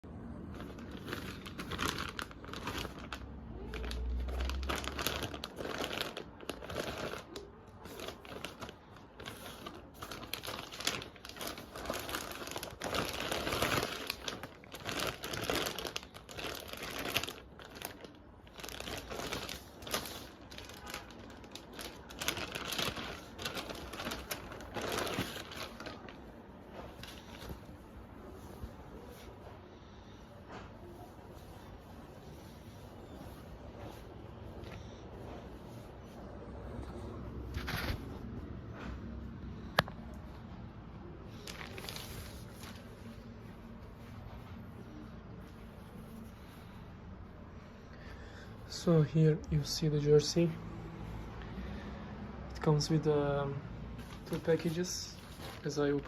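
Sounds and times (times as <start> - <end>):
plastic packaging crinkling: 0.3 - 29.3, 37.5 - 38.3, 41.3 - 44.1, 52.8 - 56.0.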